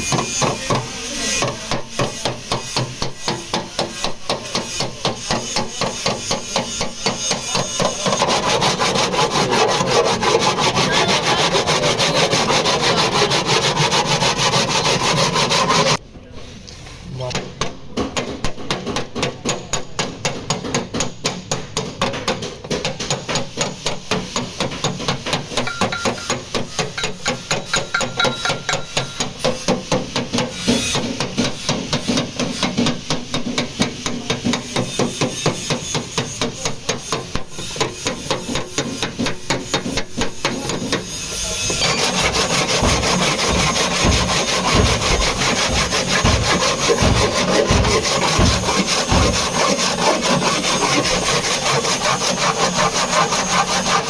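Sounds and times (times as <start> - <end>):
rubbing and scraping on car panel: 8.0 - 16.0, 41.6 - 54.0
deep thumps: 42.0 - 50.4.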